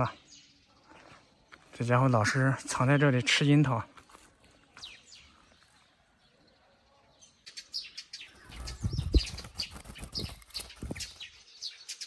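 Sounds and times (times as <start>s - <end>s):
bird chirping: 4.5s - 12.0s.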